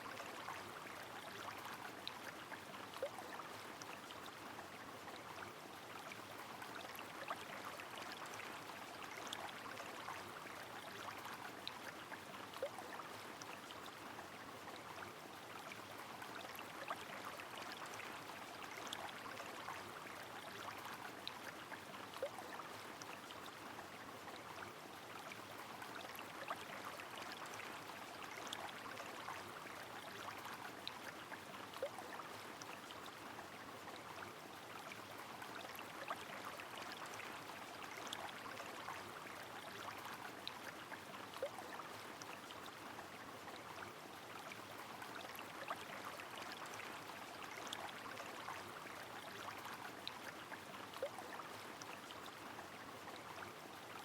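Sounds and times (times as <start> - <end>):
river flowing: 0.0 - 54.0.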